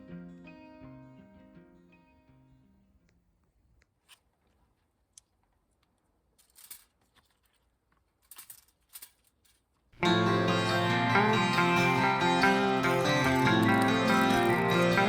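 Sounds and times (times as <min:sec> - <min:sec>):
music with plucked strings: 0:00.0 - 0:02.7, 0:10.0 - 0:15.0
handling rustles and clicks: 0:03.8 - 0:10.0.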